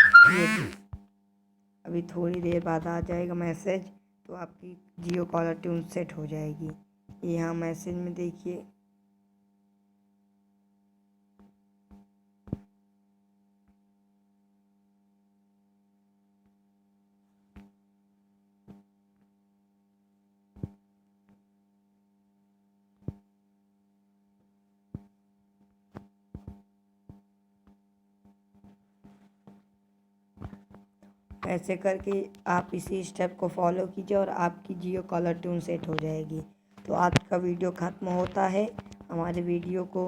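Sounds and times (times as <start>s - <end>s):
low electrical hum: 31.0s - 40.0s.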